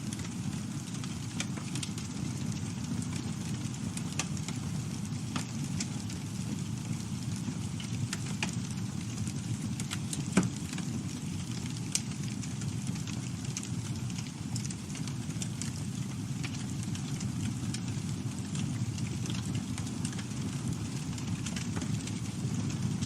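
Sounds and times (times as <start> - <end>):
burning wood crackling and popping: 0.0 - 23.0
campfire flames rumbling: 0.0 - 23.0.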